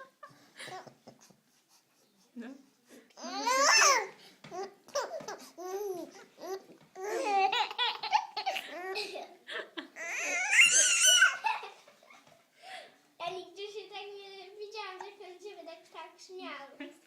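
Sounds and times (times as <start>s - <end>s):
small children laughing and babbling: 3.1s - 12.3s, 13.8s - 15.9s
child squealing laugh: 10.0s - 11.8s.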